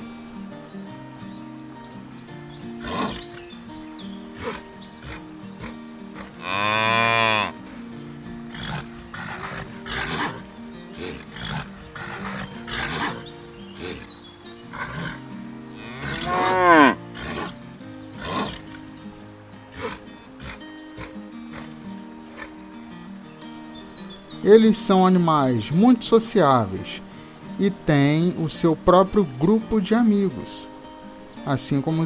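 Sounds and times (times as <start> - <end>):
cattle mooing: 4.4 - 7.6, 8.6 - 14.1, 14.7 - 17.6, 18.2 - 18.7.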